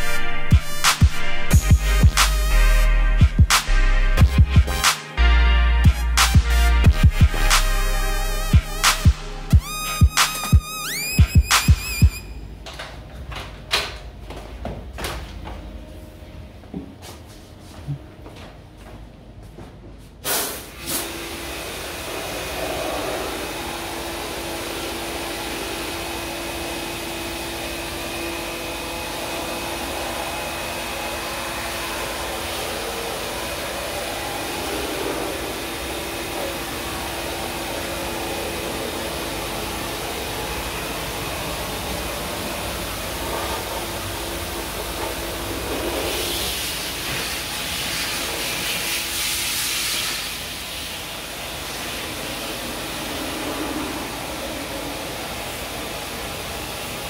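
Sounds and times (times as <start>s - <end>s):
pressure washer motor hum: 20.7s - 57.0s.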